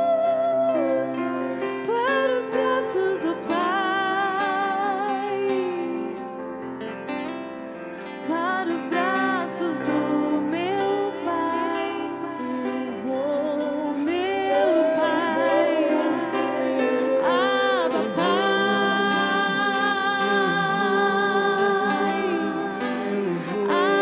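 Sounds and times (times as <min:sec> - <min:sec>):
acoustic guitar: 0:00.0 - 0:24.0
person singing slow melody: 0:00.0 - 0:24.0.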